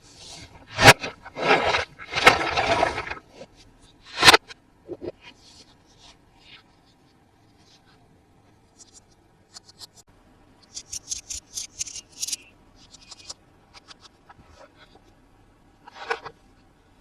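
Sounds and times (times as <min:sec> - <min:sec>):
packaging crinkling and scratching: 0:00.7 - 0:03.5.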